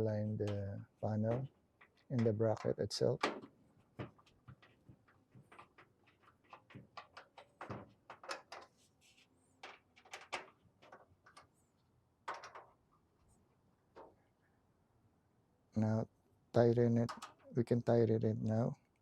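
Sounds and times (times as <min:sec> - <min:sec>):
metal panels clicking and knocking: 0:00.0 - 0:08.8, 0:09.6 - 0:11.6, 0:12.2 - 0:12.9, 0:16.7 - 0:17.7.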